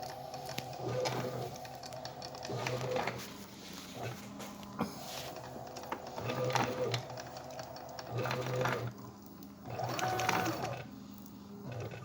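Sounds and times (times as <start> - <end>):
steady machine hum: 0.0 - 12.0
stepper motors whining: 9.6 - 10.9.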